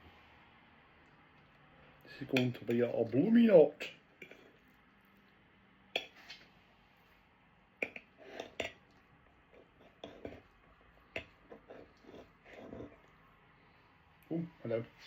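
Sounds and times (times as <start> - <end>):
cutlery clinking against dish: 7.8 - 8.8.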